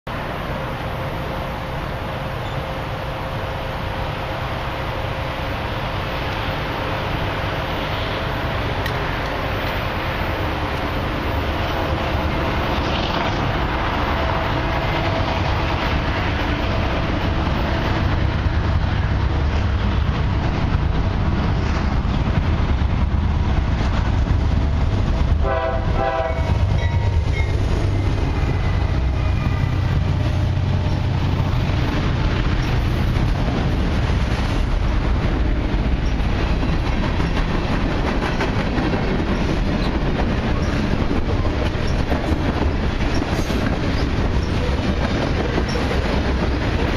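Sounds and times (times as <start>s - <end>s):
freight train rumbling past: 0.1s - 46.9s
wheels clattering on rails: 7.1s - 46.9s
locomotive horn blast: 25.4s - 28.0s.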